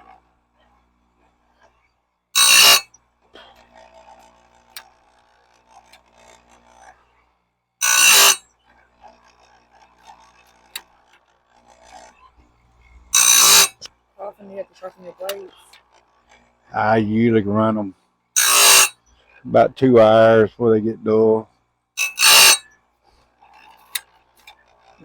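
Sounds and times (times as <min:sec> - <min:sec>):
grinding wheel screeching on blade: 0:02.4 - 0:02.9, 0:07.8 - 0:12.4, 0:13.1 - 0:17.2, 0:18.4 - 0:20.4, 0:22.0 - 0:22.8, 0:23.4 - 0:25.0.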